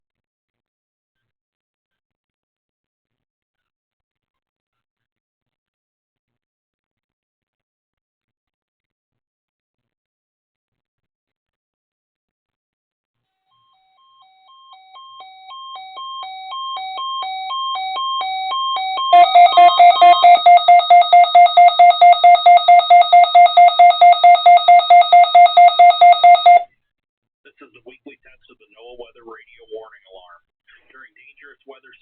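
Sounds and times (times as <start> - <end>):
weather radio alarm beeping: 14.7 - 26.6.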